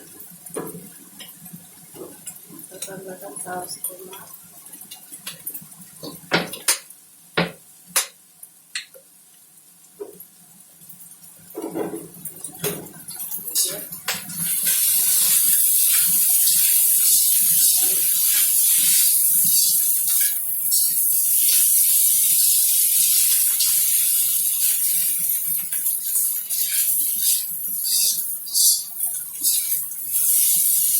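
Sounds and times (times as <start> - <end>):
frying sizzle: 0.0 - 30.9.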